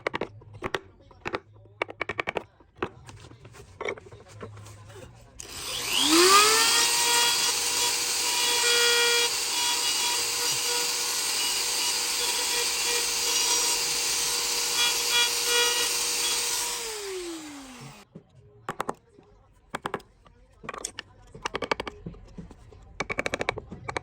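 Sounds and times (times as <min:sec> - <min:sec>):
power tool motor whine: 0:05.4 - 0:18.0.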